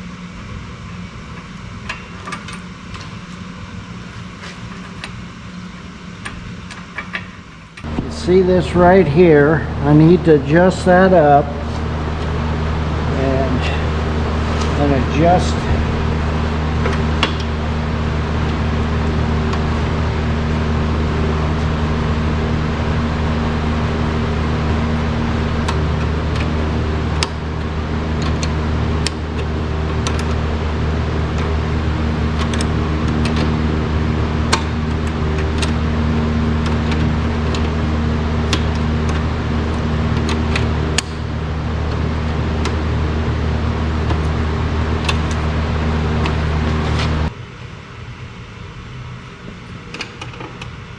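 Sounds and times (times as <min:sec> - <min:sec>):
low mechanical hum: 0:00.0 - 0:50.9.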